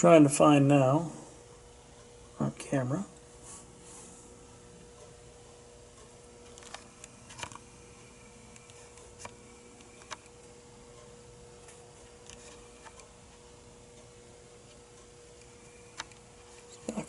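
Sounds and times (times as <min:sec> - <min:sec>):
faint steady hum: 0:00.0 - 0:17.0
small clicks and taps: 0:08.5 - 0:13.4.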